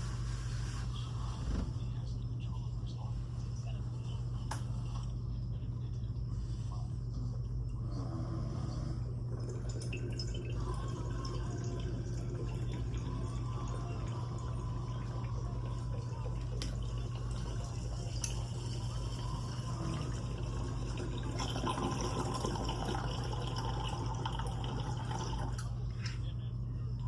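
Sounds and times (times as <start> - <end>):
water bubbling in a bong: 7.6 - 25.8.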